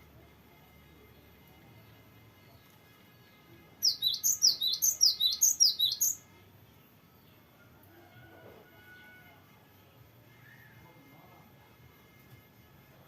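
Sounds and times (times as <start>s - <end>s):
bird singing rolling notes: 3.8s - 6.2s.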